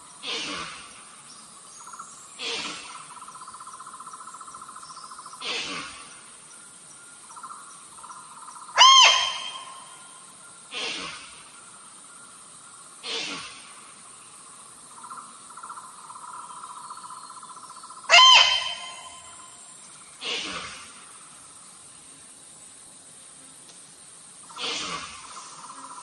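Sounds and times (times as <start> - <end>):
insect trill: 0.0 - 26.0
short rough hissing: 0.2 - 1.0, 2.4 - 3.1, 5.4 - 6.2, 10.7 - 11.6, 13.0 - 13.9, 20.2 - 21.2, 24.4 - 25.6.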